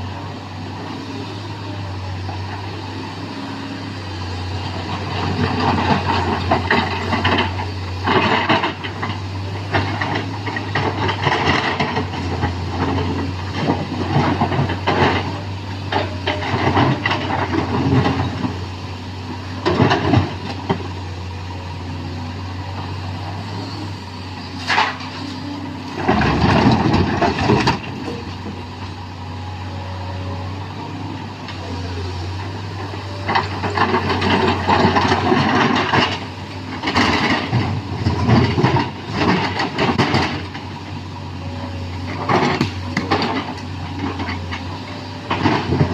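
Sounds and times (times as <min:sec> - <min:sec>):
excavator diesel engine running: 0:00.0 - 0:45.9
rock clunks and rattles: 0:25.9 - 0:28.4, 0:33.0 - 0:40.8.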